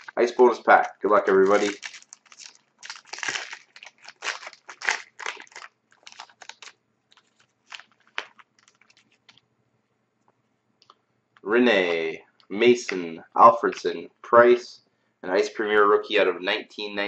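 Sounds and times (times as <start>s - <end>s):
foil wrapper tearing and crinkling: 0.0s - 9.4s.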